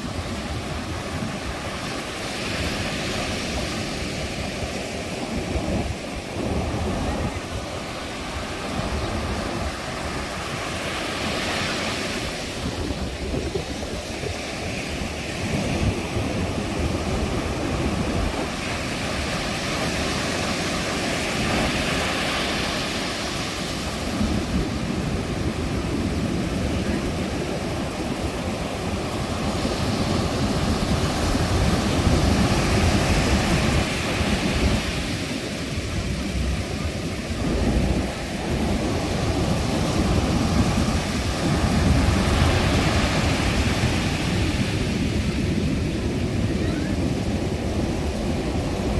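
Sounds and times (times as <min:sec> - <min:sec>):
sea waves breaking on beach: 0:00.0 - 0:48.9
low surf rumble: 0:35.4 - 0:48.9.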